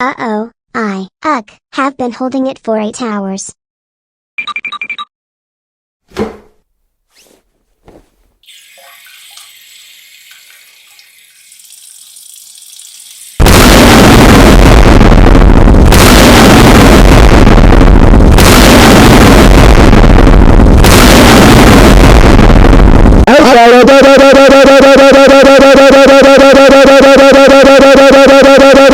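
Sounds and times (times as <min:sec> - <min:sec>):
loud distorted explosion: 0:13.4 - 0:23.3.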